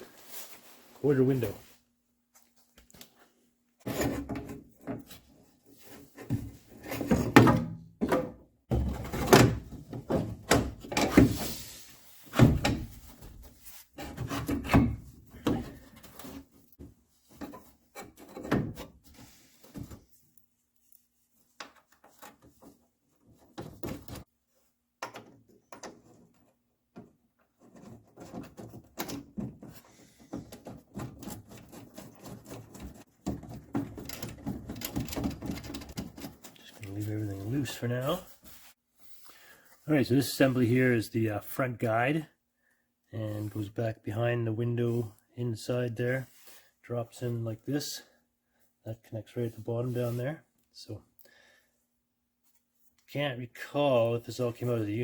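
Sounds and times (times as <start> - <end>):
parts clunking and knocking: 3.8 - 20.1, 25.0 - 36.9.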